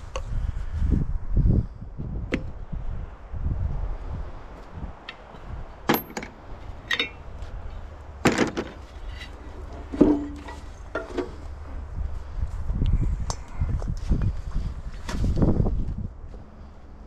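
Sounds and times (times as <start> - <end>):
metal clanking: 5.1 - 7.3, 8.2 - 11.4.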